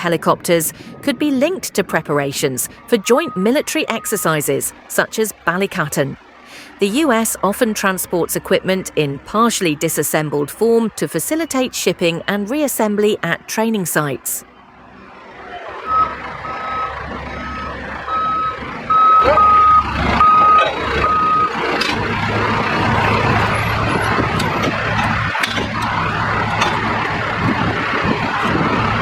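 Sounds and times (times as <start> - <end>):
heavy engine running: 0.0 - 29.0
reversing alarm beeping: 0.9 - 6.2, 15.9 - 21.7
industrial work noise: 14.4 - 29.0.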